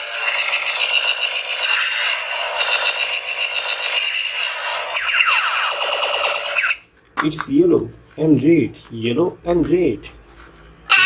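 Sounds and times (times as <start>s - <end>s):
warbling high electronic tone: 0.2s - 6.8s
falling electronic pitch sweeps: 4.9s - 6.8s.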